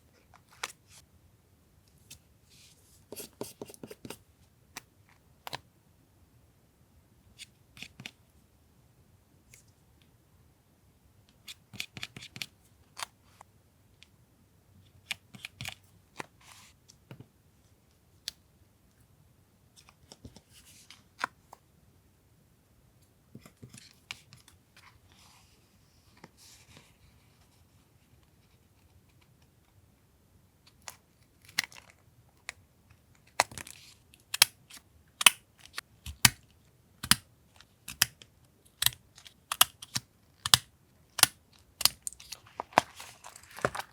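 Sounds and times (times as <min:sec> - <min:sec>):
scissors snipping paper: 0:35.2 - 0:36.4, 0:38.8 - 0:43.9
paper rustling: 0:42.0 - 0:43.9.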